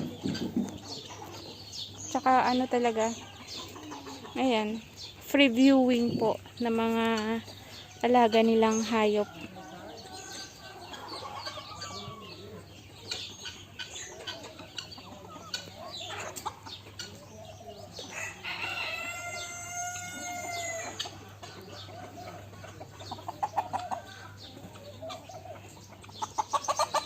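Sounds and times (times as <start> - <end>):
chickens clucking: 0.0 - 27.0
rooster crowing: 18.1 - 21.0.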